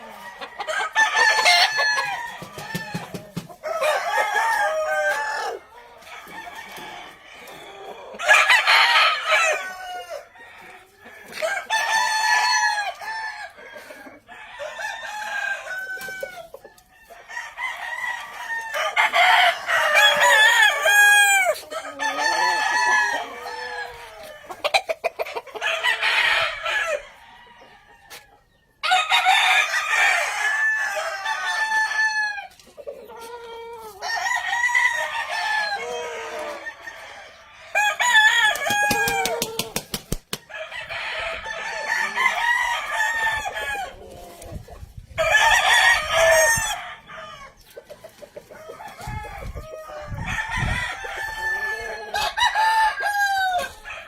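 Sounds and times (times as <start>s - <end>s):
chickens clucking: 0.0s - 28.9s, 30.8s - 54.0s
roosters crowing: 0.0s - 54.0s.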